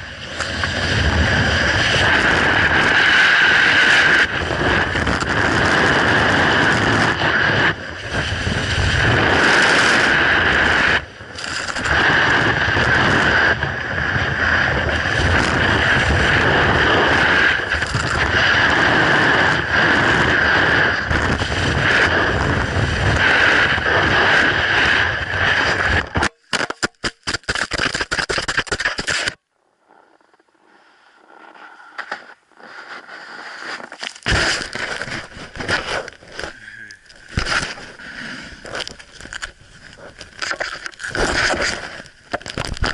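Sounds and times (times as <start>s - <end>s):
snowboard scraping on ice: 0.0s - 26.2s, 27.4s - 36.6s, 37.2s - 42.9s
wind rushing over microphone: 0.0s - 26.3s.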